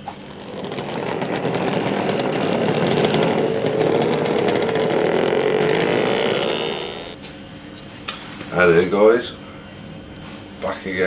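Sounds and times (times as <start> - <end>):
motor running: 0.0 - 7.2.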